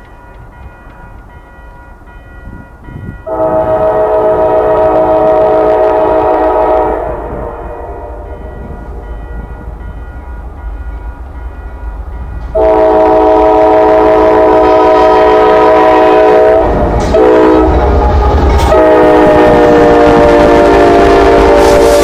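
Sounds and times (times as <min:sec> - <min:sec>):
train rumble: 0:00.0 - 0:22.0
locomotive air horn blasts: 0:03.2 - 0:09.1, 0:12.5 - 0:22.0.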